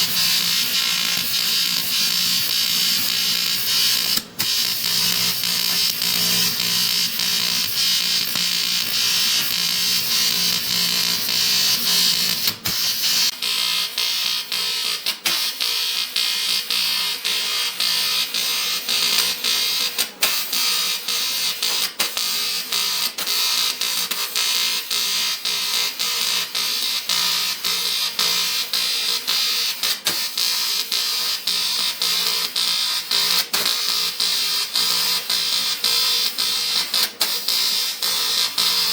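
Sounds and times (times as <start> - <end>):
sharp welding clicks: 0.0 - 13.3
welding arc buzzing hiss: 0.0 - 38.9.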